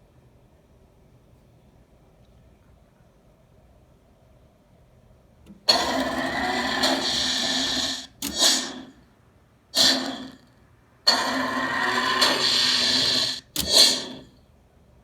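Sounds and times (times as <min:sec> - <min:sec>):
motor whirring ring: 0:05.7 - 0:09.0, 0:11.1 - 0:14.3.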